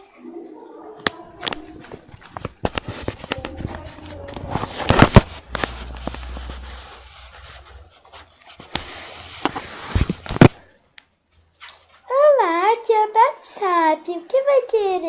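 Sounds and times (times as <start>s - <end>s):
rustling: 1.1s - 12.1s.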